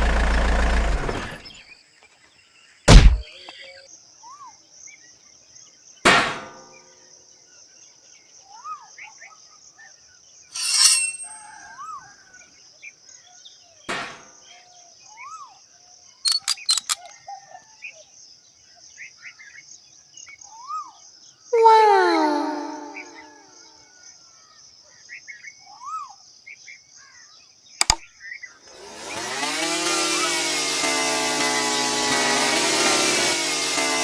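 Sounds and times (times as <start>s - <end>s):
sharp knocks: 2.9s - 3.2s.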